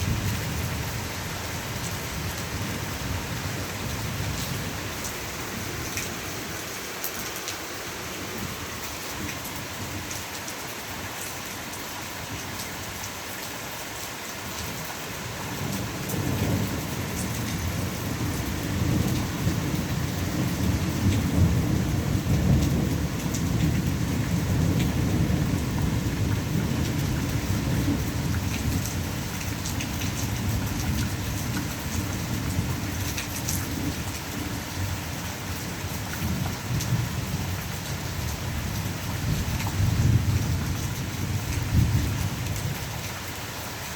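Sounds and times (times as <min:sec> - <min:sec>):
steady rain: 0:00.0 - 0:43.9
thunder rumbling: 0:15.6 - 0:29.2.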